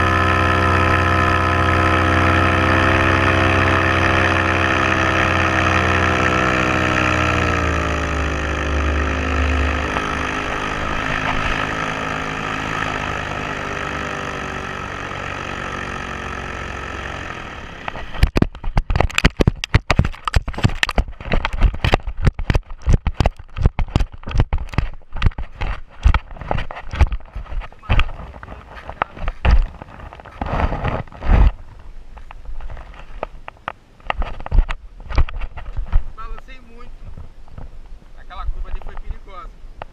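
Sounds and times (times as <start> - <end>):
paramotor engine running: 0.0 - 19.7
sharp thumps: 0.0 - 31.6.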